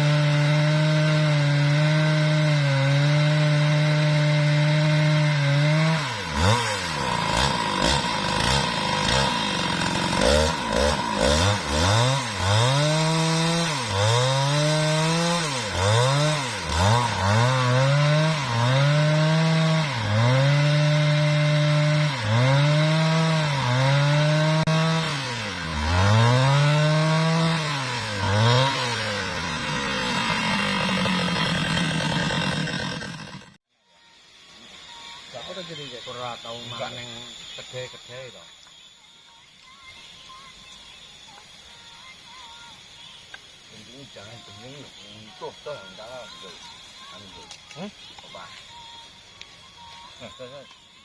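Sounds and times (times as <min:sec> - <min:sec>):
chainsaw cutting log: 0:00.0 - 0:33.6.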